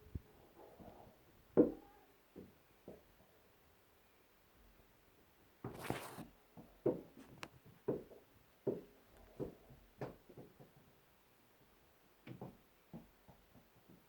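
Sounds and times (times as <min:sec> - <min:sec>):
rustling scrape: 0:05.7 - 0:06.3.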